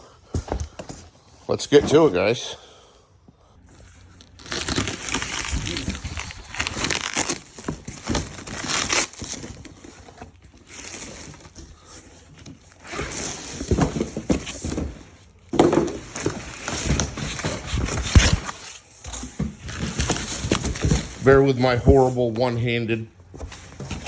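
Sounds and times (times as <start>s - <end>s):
packaging rustling and crinkling: 3.8s - 22.2s.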